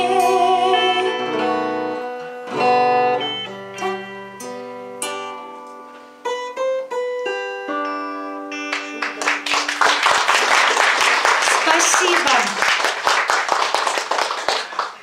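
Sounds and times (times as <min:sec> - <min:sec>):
guitar strum: 0:00.0 - 0:09.8
plucked guitar notes: 0:00.0 - 0:09.8.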